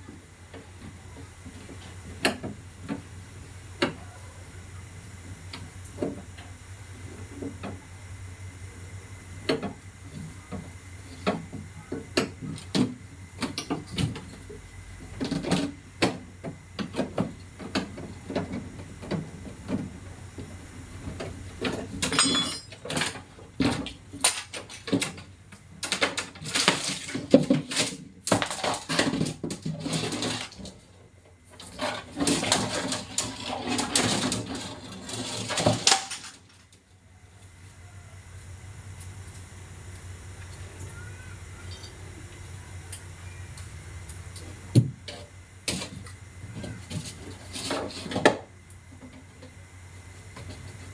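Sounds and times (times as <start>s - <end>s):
metal and plastic parts clattering: 21.0s - 30.9s, 31.5s - 36.7s.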